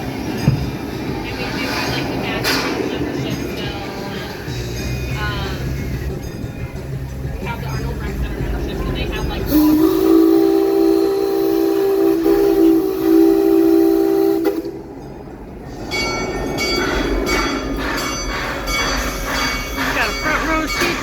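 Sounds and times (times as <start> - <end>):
train running noise: 0.0 - 21.0
train whistle chord: 9.5 - 14.9.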